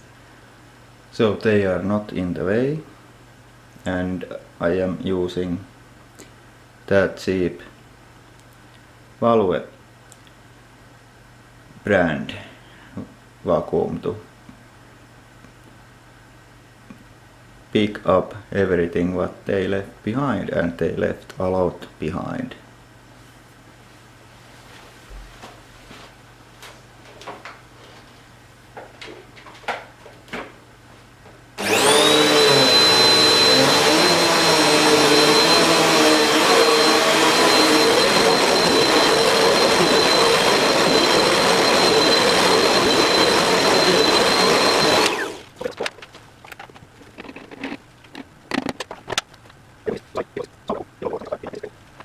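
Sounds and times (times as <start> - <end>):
vacuum cleaner motor whine: 31.6 - 45.6.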